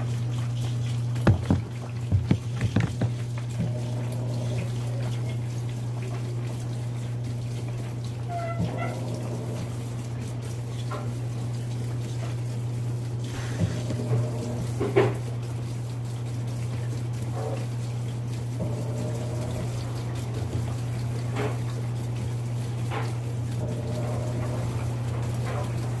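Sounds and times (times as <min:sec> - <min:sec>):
washing machine filling with water: 0:00.0 - 0:26.0
sharp knocks: 0:01.2 - 0:03.2.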